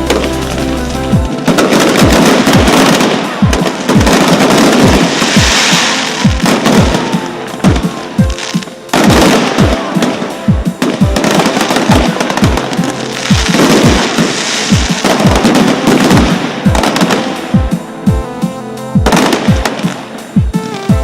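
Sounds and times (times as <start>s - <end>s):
fireworks crackling and banging: 0.0s - 18.2s, 19.0s - 21.0s
loud music with kick drum: 0.0s - 21.0s.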